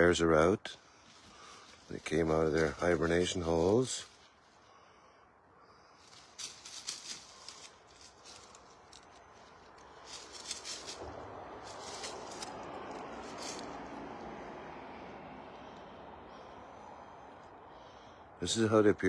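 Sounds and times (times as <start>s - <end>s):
steady rushing noise: 6.0s - 15.5s.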